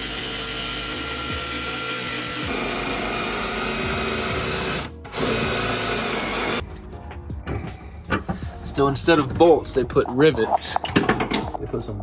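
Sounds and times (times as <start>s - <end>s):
angle grinder cutting metal: 0.0s - 6.6s.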